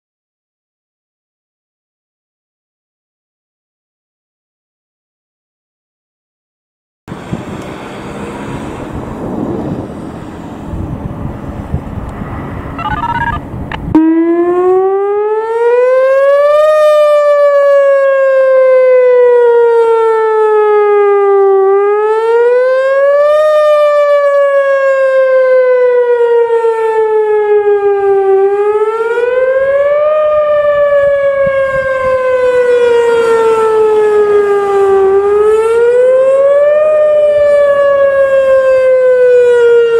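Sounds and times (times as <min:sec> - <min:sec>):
warning siren wailing: 0:12.7 - 0:39.9.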